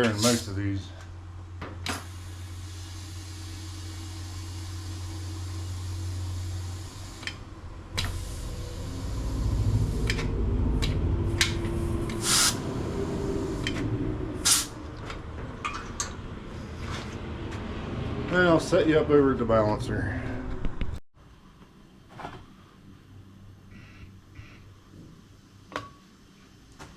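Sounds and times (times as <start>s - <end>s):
short loud air blasts: 0.0s - 0.6s, 1.9s - 10.4s, 11.3s - 13.8s, 14.4s - 14.8s
compressed air hissing into tire: 0.1s - 0.6s, 1.9s - 14.8s
low rumbling: 3.9s - 21.0s.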